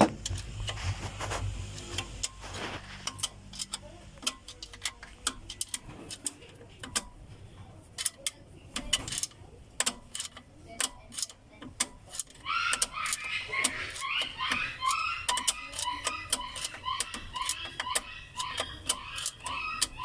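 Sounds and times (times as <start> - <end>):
hand tools tapping metal: 7.8 - 20.0.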